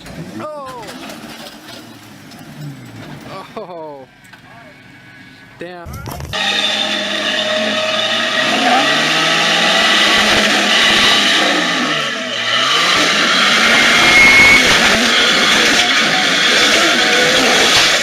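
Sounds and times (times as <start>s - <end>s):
off-road engine revving: 0.0s - 18.0s
tyres rushing over terrain: 5.6s - 18.0s.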